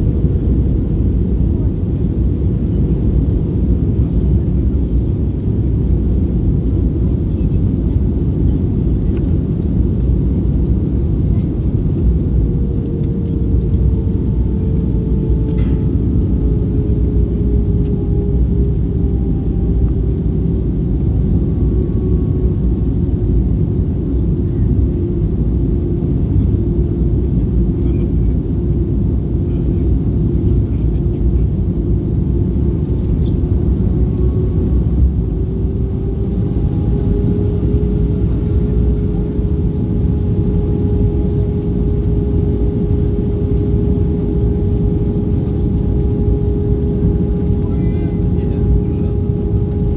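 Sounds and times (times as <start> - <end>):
airplane cabin rumble: 0.0 - 49.9
steady engine tone: 31.7 - 49.9.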